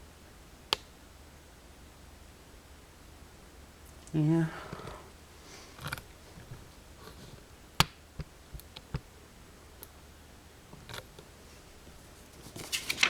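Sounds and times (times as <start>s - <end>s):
paper page turning: 12.2s - 13.0s.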